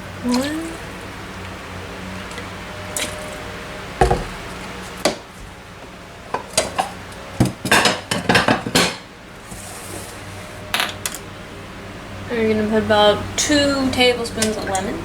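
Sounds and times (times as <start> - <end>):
utensils and pot clinking: 7.6 - 9.1.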